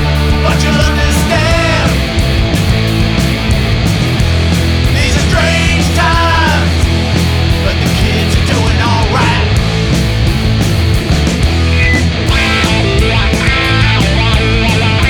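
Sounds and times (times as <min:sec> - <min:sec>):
rock band playing: 0:00.0 - 0:15.0
bending high guitar notes: 0:09.6 - 0:15.0.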